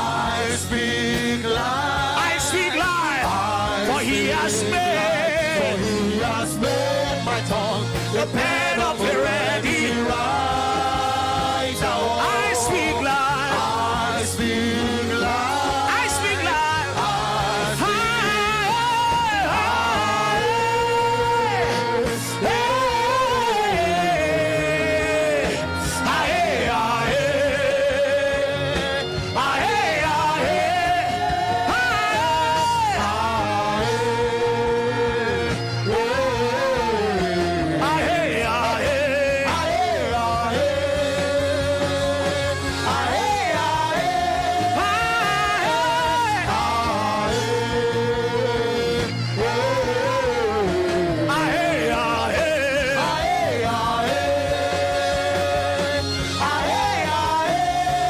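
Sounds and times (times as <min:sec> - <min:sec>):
sustained instrumental backing: 0:00.0 - 0:58.0.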